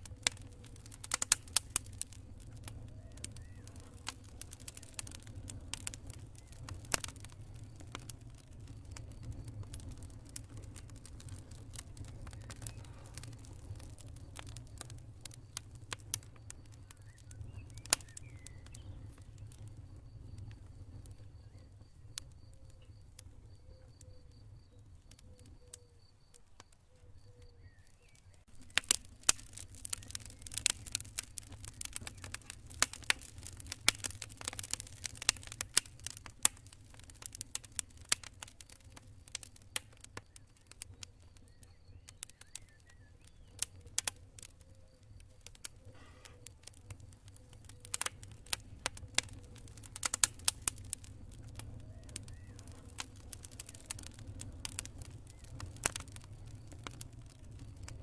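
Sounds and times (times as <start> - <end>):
campfire crackling and popping: 0.0 - 58.0
crickets chirping: 12.2 - 33.8.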